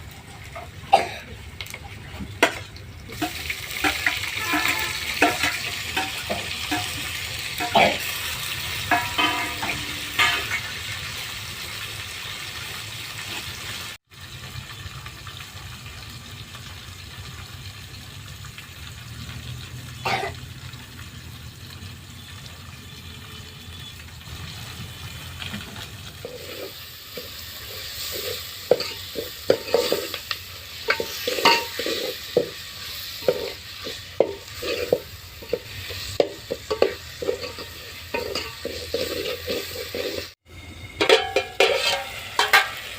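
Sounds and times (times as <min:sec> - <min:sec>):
food sizzling in a pan: 0:00.0 - 0:42.9
spoon scraping a pan: 0:02.4 - 0:10.7, 0:26.2 - 0:40.4, 0:41.0 - 0:42.9.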